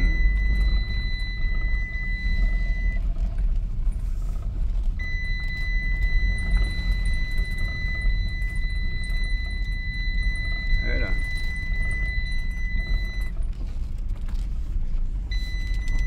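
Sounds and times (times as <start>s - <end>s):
low vehicle rumble: 0.0s - 16.0s.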